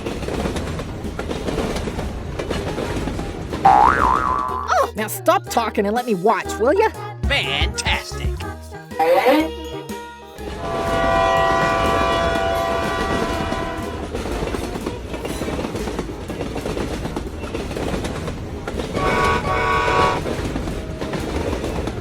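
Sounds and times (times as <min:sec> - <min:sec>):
train wheels clacking on rails: 0:00.0 - 0:03.7, 0:10.6 - 0:22.0
train horn blast: 0:10.5 - 0:15.4, 0:19.0 - 0:21.6.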